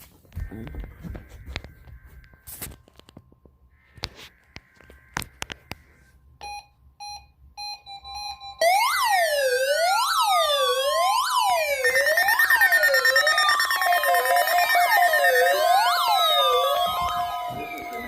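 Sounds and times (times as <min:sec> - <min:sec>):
short beeps: 0:06.4 - 0:08.6
electronic siren wails overlapping: 0:07.8 - 0:18.0.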